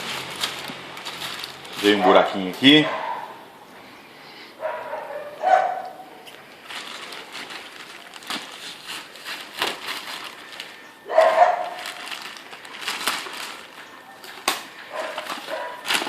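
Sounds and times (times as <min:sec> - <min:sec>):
packaging rustling: 0:00.0 - 0:02.5, 0:06.3 - 0:16.0
dog yipping: 0:01.8 - 0:03.4, 0:04.6 - 0:06.0, 0:11.1 - 0:12.0, 0:14.9 - 0:15.9.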